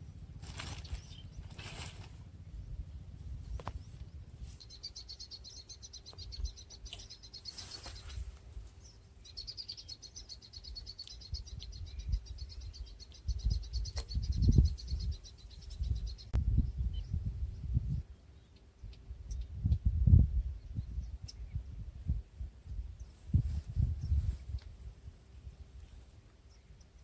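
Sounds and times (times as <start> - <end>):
low rumbling: 0.0 - 7.5, 11.3 - 18.0.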